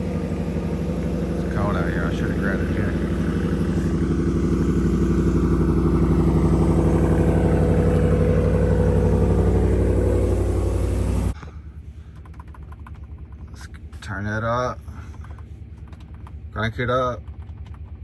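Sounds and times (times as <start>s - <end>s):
pickup truck engine idling: 0.0s - 18.0s.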